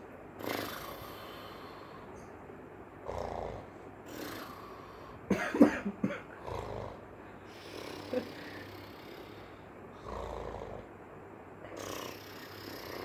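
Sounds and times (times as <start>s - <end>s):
baby snoring: 0.4s - 1.7s, 3.1s - 5.0s, 7.6s - 10.9s, 11.7s - 13.0s.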